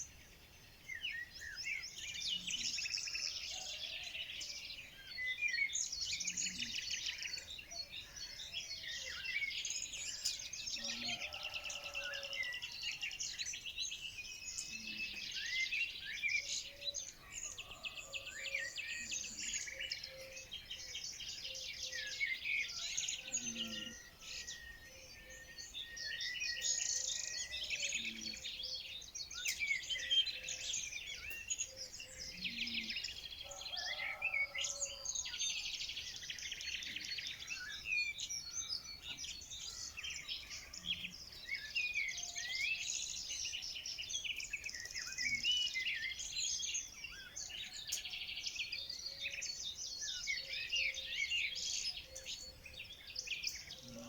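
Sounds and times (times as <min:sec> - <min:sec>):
songbirds chirping and trilling: 0:00.0 - 0:54.0.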